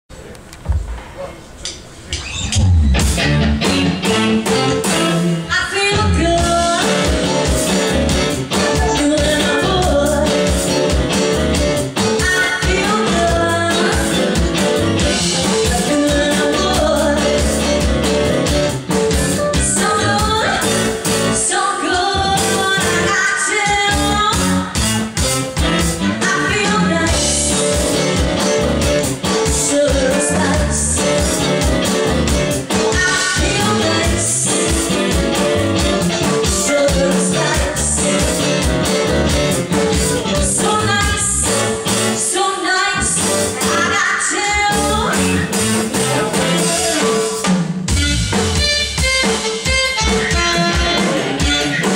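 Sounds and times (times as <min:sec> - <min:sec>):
drum kit beat: 0:00.6 - 0:42.4, 0:43.0 - 0:51.9
guitar: 0:02.1 - 0:51.9
person singing: 0:08.6 - 0:10.9, 0:12.0 - 0:14.4, 0:15.1 - 0:17.9, 0:29.3 - 0:31.6, 0:32.7 - 0:35.5, 0:36.1 - 0:39.1, 0:42.2 - 0:47.5.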